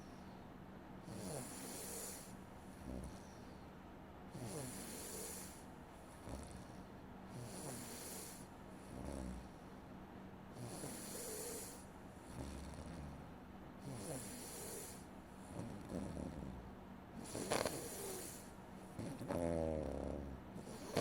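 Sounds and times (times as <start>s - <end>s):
person snoring: 1.1s - 3.2s, 4.4s - 5.6s, 6.2s - 9.5s, 10.6s - 13.2s, 13.8s - 21.0s.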